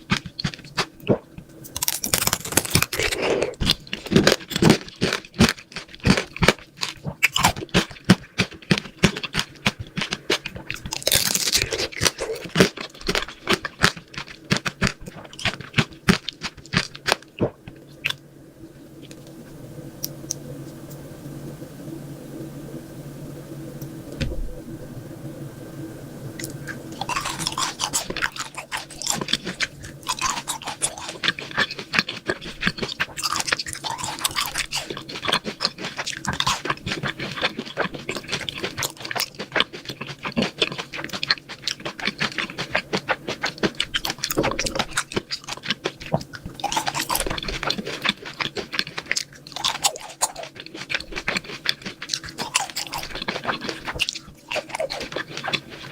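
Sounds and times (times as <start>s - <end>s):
soft mouth sounds: 0.0s - 4.2s
person crunching crisp sweets: 0.0s - 18.2s, 26.4s - 55.9s
faint steady hum: 0.0s - 55.9s.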